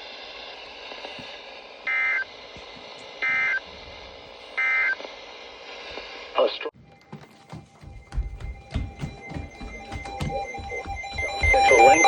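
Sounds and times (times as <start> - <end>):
radio hiss: 0.0 - 6.8
digital data tone bursts: 10.2 - 12.0.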